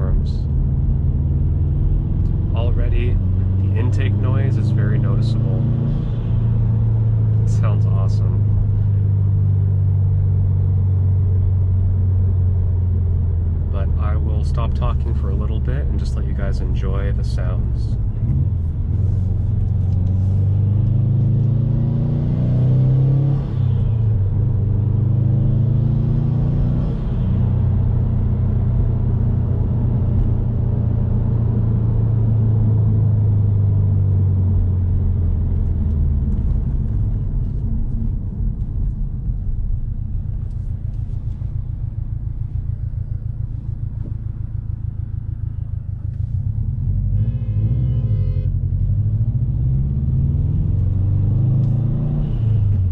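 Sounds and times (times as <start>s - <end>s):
car engine revving: 0.0s - 11.4s, 12.3s - 39.7s, 43.1s - 52.9s
short tone: 47.2s - 48.6s.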